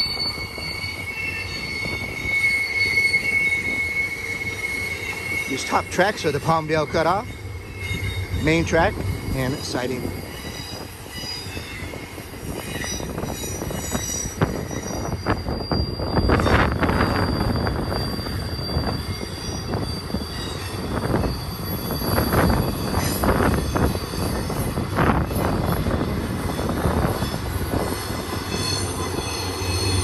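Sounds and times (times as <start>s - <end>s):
freight train rumbling past: 0.0s - 30.0s
high wheel squeals: 0.0s - 30.0s.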